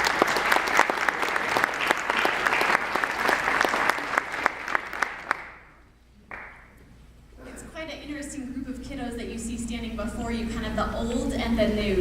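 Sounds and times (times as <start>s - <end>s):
audience applauding: 0.0s - 6.6s.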